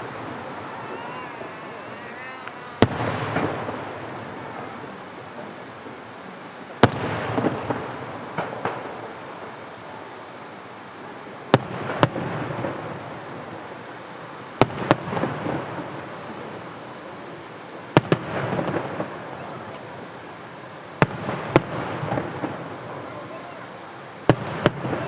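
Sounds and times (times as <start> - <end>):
firework shells bursting: 0.0 - 5.3.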